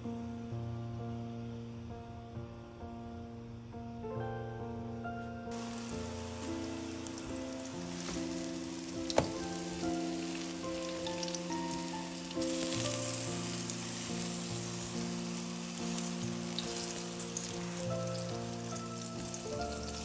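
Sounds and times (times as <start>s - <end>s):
soft background music: 0.0s - 20.0s
crackling hiss: 5.5s - 20.0s.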